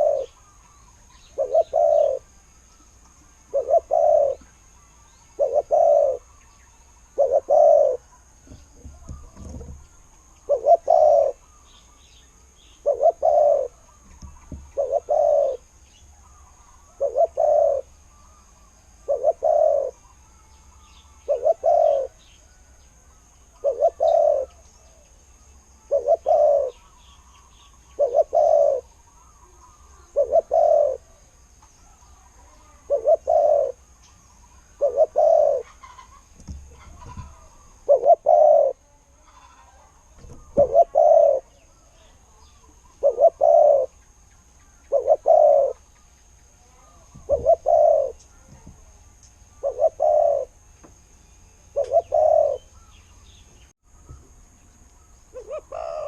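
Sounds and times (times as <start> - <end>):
dove cooing: 0.0 - 0.6, 1.2 - 2.3, 3.4 - 4.5, 5.3 - 6.4, 7.1 - 11.4, 12.8 - 18.4, 19.0 - 20.1, 21.2 - 22.2, 23.5 - 25.0, 25.8 - 31.2, 31.9 - 33.9, 34.5 - 44.0, 44.8 - 45.9, 46.7 - 48.9, 49.5 - 50.6, 51.7 - 52.9, 55.3 - 56.0
small birds chirping: 0.0 - 56.0.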